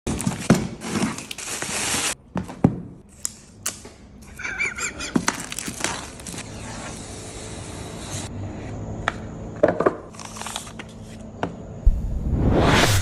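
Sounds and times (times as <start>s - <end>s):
packaging rustling: 5.2s - 6.4s.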